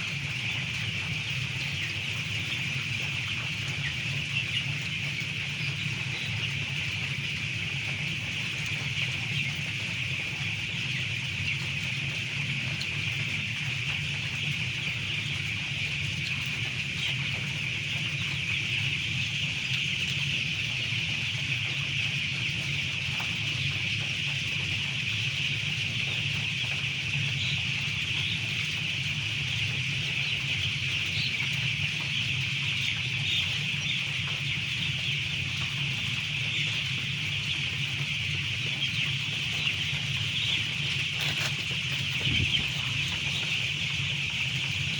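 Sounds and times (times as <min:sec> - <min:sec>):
chickens chirping and clucking: 0:00.0 - 0:44.9
steady low hum: 0:25.6 - 0:44.9.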